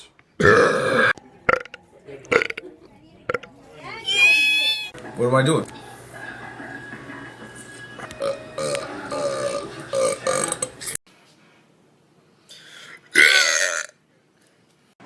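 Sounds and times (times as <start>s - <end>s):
person belching: 0.4s - 1.2s.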